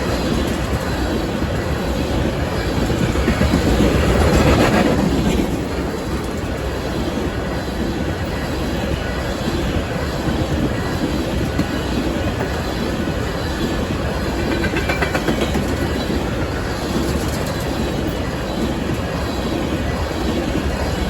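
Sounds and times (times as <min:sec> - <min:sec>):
clickety-clack over rail joints: 0:00.0 - 0:21.0
train wheels rumbling on rails: 0:00.0 - 0:21.0.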